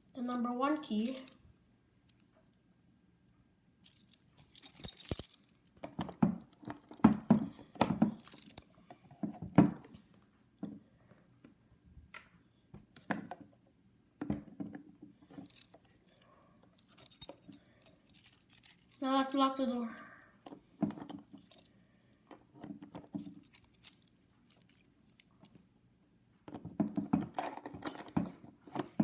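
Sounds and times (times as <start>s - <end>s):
toy keys jangling: 0.2s - 1.4s, 3.9s - 5.8s, 8.2s - 8.7s, 16.8s - 20.4s, 23.2s - 25.2s.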